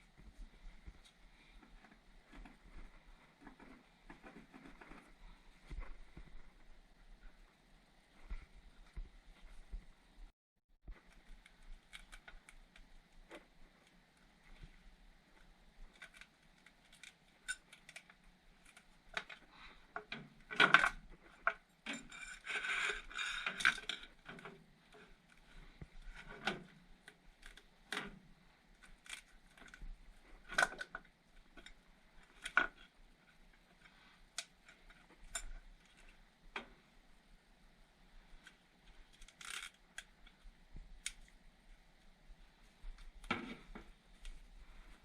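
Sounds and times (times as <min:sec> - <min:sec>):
scraping or rustling: 0:00.0 - 0:06.7
clicks and knocks of metal parts: 0:15.9 - 0:25.4.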